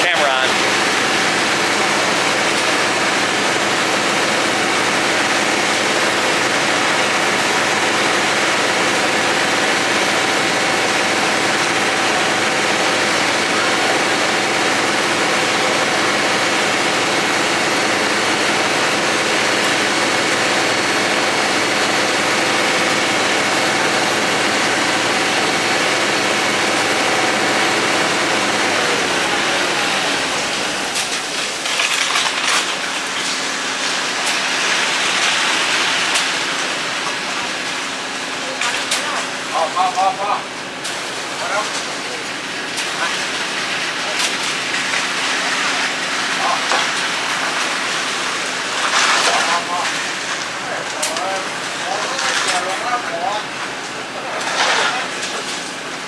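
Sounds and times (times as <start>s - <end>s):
heavy engine whining: 0.0s - 31.8s.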